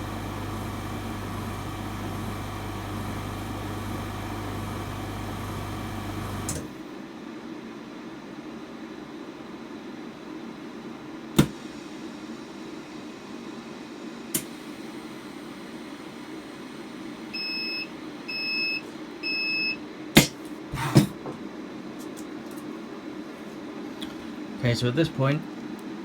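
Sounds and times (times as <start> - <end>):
lamination machine humming: 0.0 - 7.0, 14.2 - 21.0.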